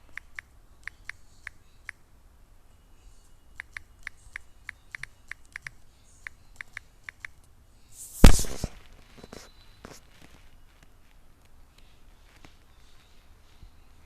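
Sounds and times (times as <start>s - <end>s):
small sharp clicks: 0.0s - 2.0s, 3.6s - 7.6s
loud short thump: 8.1s - 8.8s.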